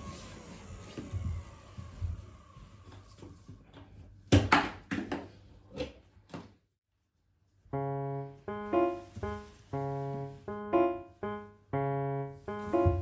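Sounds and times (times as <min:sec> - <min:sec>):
piano music: 0:07.7 - 0:13.0.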